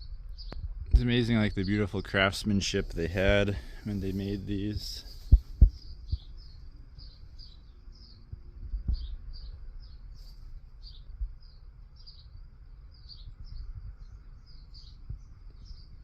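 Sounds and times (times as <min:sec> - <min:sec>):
low rumble: 0:00.0 - 0:11.6
small birds chirping: 0:00.0 - 0:16.0.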